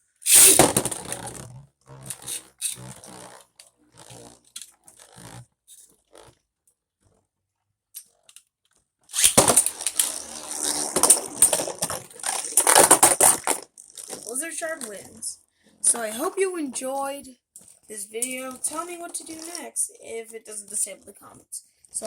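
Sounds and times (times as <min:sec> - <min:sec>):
tops scraping plastic stadium: 0:00.2 - 0:06.3, 0:09.1 - 0:15.2.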